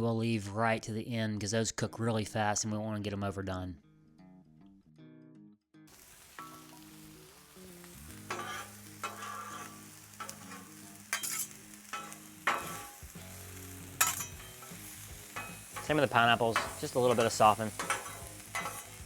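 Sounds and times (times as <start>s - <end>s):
vegetables sizzling on griddle: 5.9s - 19.0s
spatula scraping steel: 8.2s - 13.0s, 14.0s - 19.0s.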